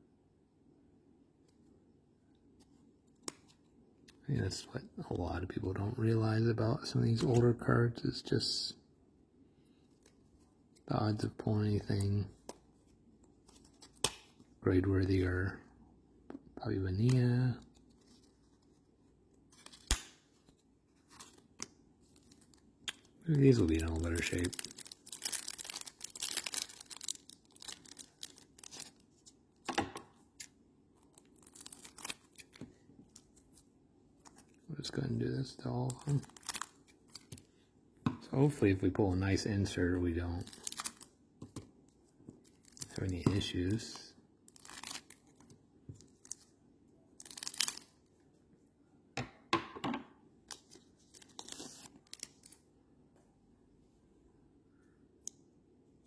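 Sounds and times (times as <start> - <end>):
cards being handled: 7.0 - 7.6, 11.7 - 15.1, 16.4 - 35.0, 35.8 - 37.5, 50.5 - 52.6
plastic wrapper tearing and crinkling: 19.5 - 20.2, 21.0 - 29.3, 30.4 - 32.6, 35.5 - 37.5, 40.4 - 41.1, 42.4 - 46.5, 47.2 - 48.0, 50.5 - 52.6.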